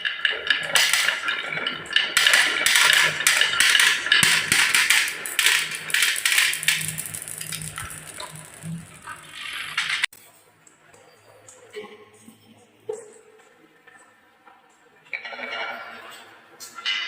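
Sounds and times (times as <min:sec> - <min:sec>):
marbles clattering down wooden run: 0:00.5 - 0:10.1.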